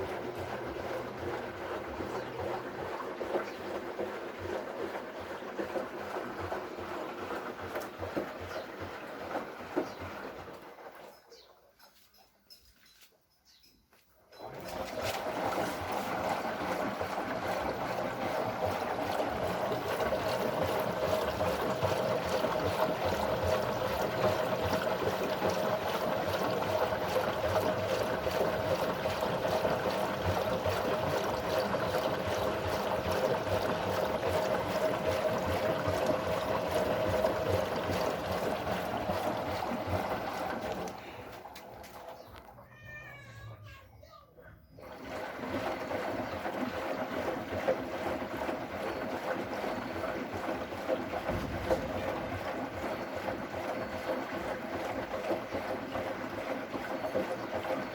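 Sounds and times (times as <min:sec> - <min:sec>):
water rushing in washing machine: 0:00.0 - 0:12.1, 0:14.3 - 0:43.2, 0:44.6 - 0:57.9.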